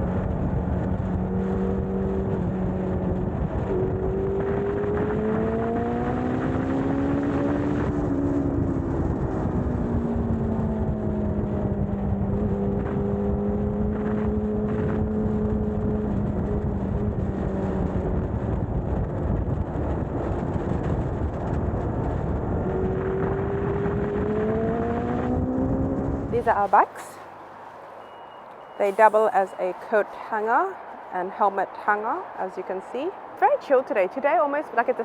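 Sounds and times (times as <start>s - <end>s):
motorcycle engine running: 0.0s - 27.7s
heavy low rumbling: 15.5s - 27.8s.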